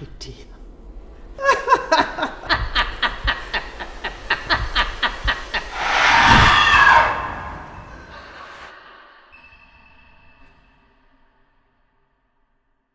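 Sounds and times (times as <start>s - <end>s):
loud hissing rush: 0.6s - 8.8s
person laughing: 1.4s - 5.8s.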